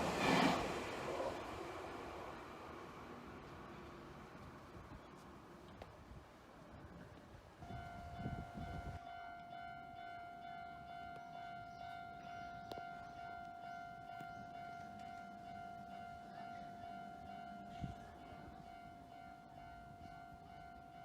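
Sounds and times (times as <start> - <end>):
level crossing warning bell: 7.6 - 21.0.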